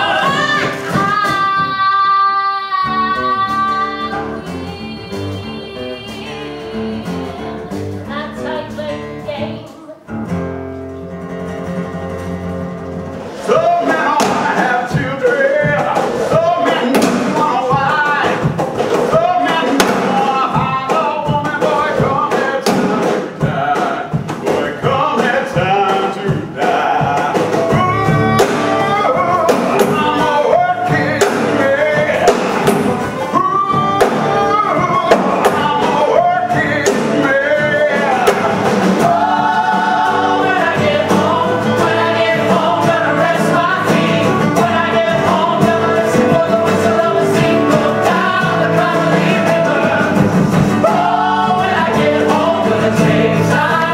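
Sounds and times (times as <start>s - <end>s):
voices singing together: 0.0s - 8.8s, 13.3s - 53.9s
band accompaniment: 0.0s - 53.9s
sharp percussive hits: 13.5s - 53.9s.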